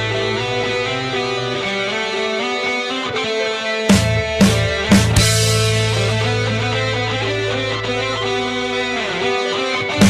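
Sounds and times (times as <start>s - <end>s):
sustained rock guitar chords: 0.0s - 10.0s
drums and full band hit: 3.9s - 9.0s.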